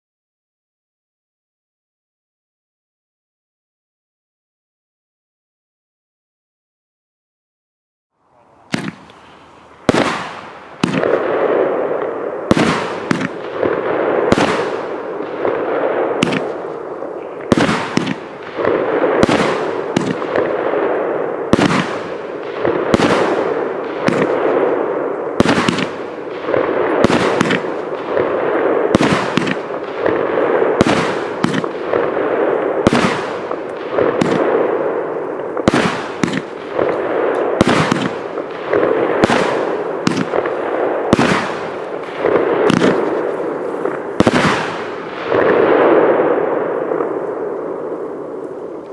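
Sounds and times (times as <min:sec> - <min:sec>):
firework shots banging: 0:08.7 - 0:47.2.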